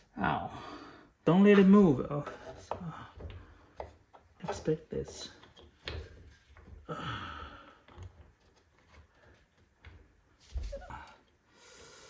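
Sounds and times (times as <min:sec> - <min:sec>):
person sighing exhale: 0:06.9 - 0:07.8.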